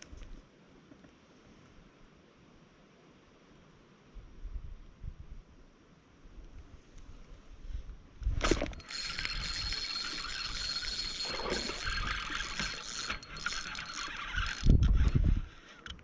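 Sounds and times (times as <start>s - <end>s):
fishing reel whirring: 8.5s - 15.2s.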